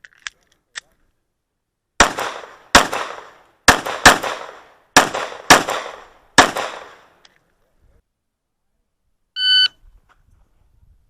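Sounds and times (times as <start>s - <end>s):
pistol shots echoing: 2.0s - 7.2s.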